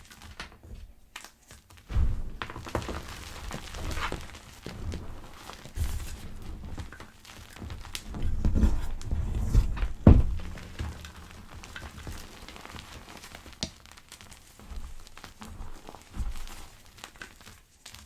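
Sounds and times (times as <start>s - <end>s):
chalk pebbles being crushed: 0.0s - 18.0s.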